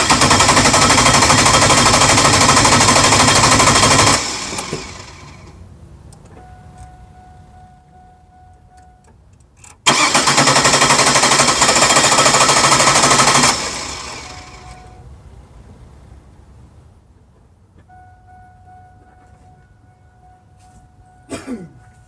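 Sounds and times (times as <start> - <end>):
engine cranking by starter motor: 0.0 - 5.6, 9.6 - 15.0
steady high tone: 14.0 - 15.1.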